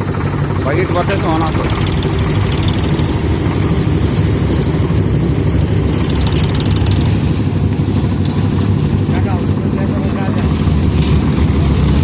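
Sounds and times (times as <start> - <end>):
fast high clatter: 0.0 - 7.8
tractor diesel engine running: 0.0 - 12.0.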